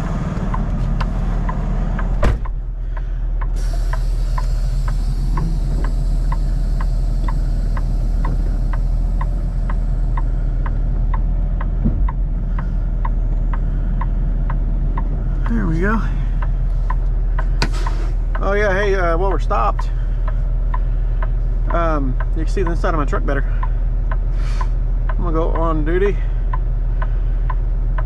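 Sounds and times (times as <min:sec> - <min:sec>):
diesel engine idling: 0:00.0 - 0:28.0
air brake burst: 0:03.5 - 0:10.6, 0:16.9 - 0:18.3, 0:24.3 - 0:24.8
air hissing: 0:03.5 - 0:10.6, 0:16.8 - 0:18.3.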